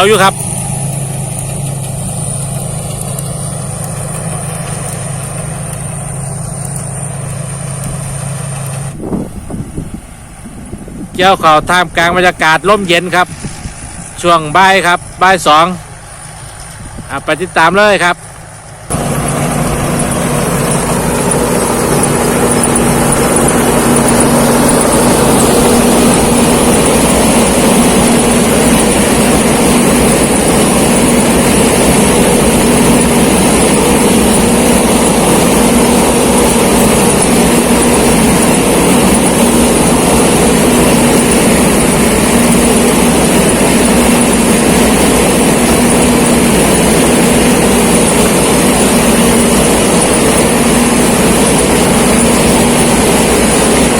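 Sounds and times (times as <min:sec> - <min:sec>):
combine harvester mechanical drone: 0:00.0 - 0:53.9
high whine: 0:00.0 - 0:53.9.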